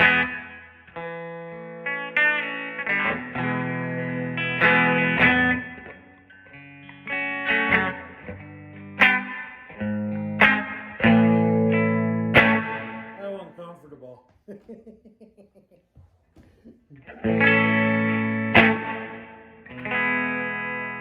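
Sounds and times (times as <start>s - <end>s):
electric guitar chords ringing: 0.0s - 13.2s, 17.0s - 21.0s.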